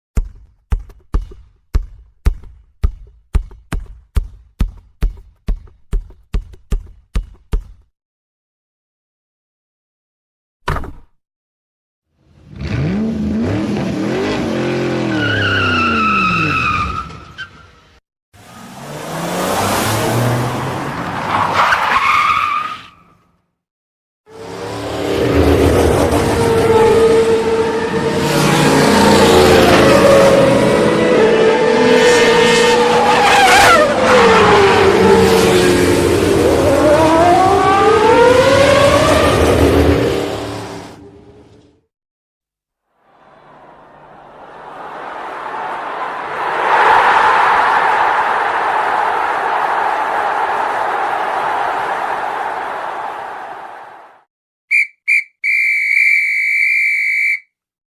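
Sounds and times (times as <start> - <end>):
race car engine revving: 12.4 - 15.2, 24.4 - 41.0.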